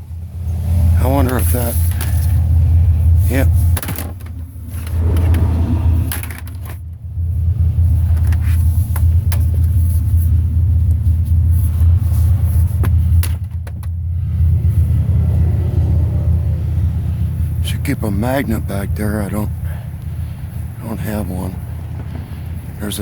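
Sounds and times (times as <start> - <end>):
steady low rumble: 0.0 - 23.0
scrap metal clinking and knocking: 11.6 - 14.0.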